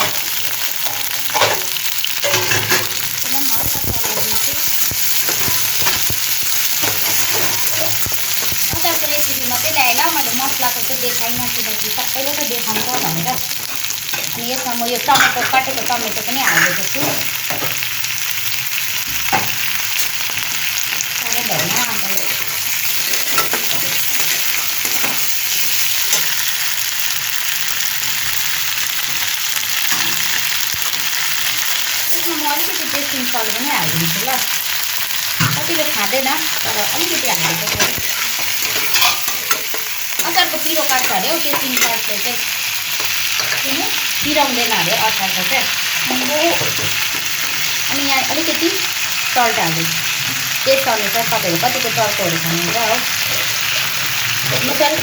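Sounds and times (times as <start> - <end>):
garlic sizzling in hot oil: 0.0 - 55.0
utensil scraping a pan: 36.8 - 42.2.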